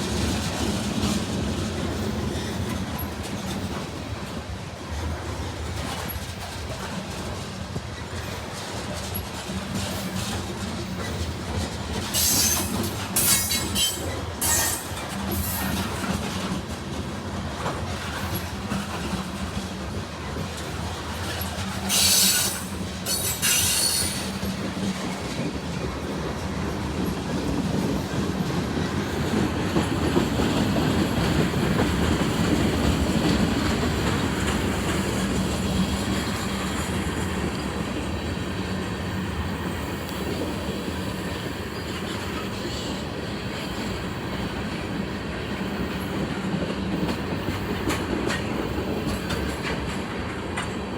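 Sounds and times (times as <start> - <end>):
train rumble: 0.0 - 50.9
train wheels clacking over rails: 0.0 - 50.9
sharp wheel squeals: 12.2 - 14.8, 21.9 - 24.5.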